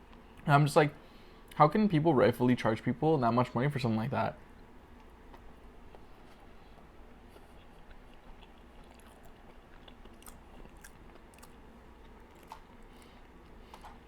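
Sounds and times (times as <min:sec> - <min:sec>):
faint chewing of cake: 0:04.6 - 0:14.0.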